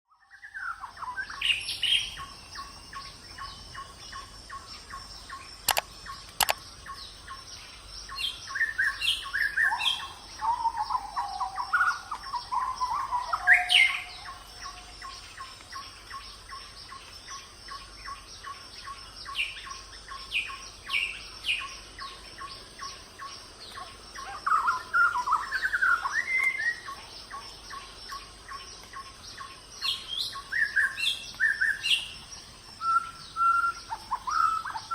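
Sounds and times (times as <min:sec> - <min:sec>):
birds chirping: 0:00.3 - 0:34.9
sharp clicks: 0:05.6 - 0:06.6.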